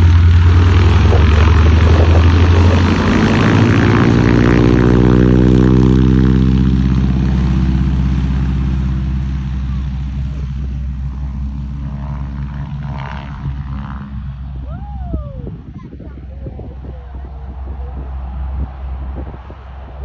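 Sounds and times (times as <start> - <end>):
propeller plane flying past: 0.0 - 20.0.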